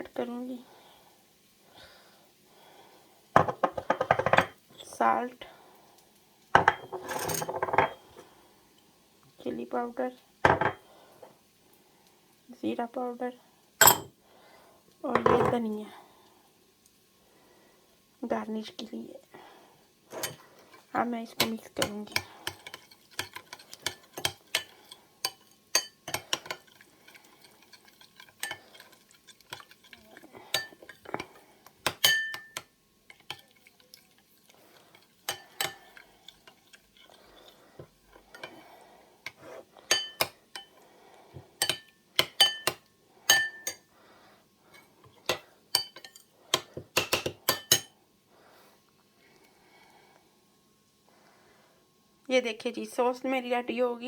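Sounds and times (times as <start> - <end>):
spoon clinking against bowl: 13.8 - 14.1, 21.4 - 26.6, 27.7 - 28.7, 30.5 - 31.2, 31.8 - 32.7, 35.3 - 35.8, 39.9 - 40.7, 41.6 - 43.8, 45.3 - 46.2, 47.0 - 47.9
spoon stirring thick sauce: 20.1 - 40.8, 41.4 - 43.8, 44.8 - 47.9.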